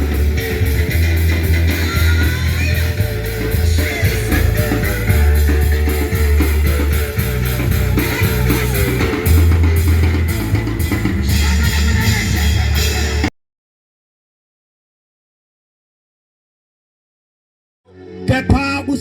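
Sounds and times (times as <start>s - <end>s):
band music with drums and guitar: 0.0s - 13.3s.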